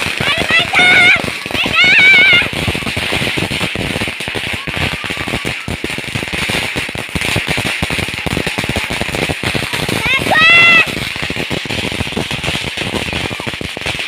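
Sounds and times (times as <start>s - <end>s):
fireworks crackling: 0.0s - 14.0s.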